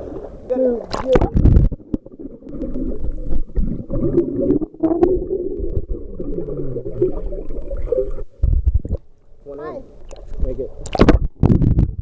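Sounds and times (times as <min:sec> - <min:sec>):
water rushing: 0:00.0 - 0:08.5
underwater bubbling and churning: 0:00.0 - 0:12.0.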